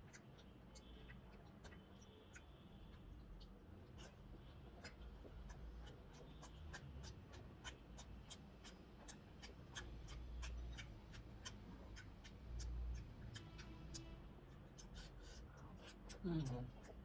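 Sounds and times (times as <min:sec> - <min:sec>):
chewing and mouth clicks: 0:00.0 - 0:17.0.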